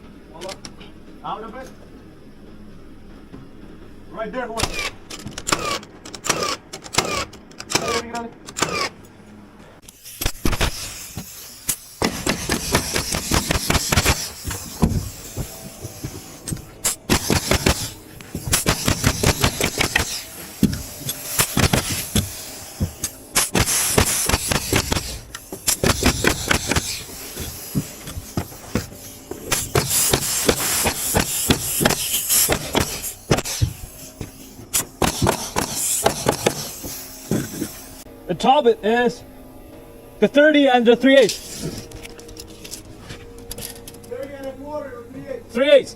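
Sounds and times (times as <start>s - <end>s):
steady high hissing: 9.8s - 45.9s
hammer strikes on lumber: 12.0s - 37.6s.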